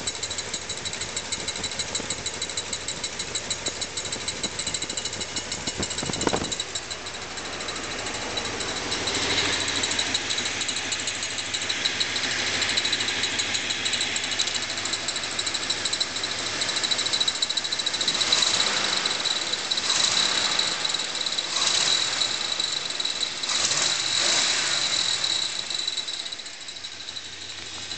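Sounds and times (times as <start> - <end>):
car engine running: 0.0 - 27.9
rapid engine ticking: 0.0 - 27.9.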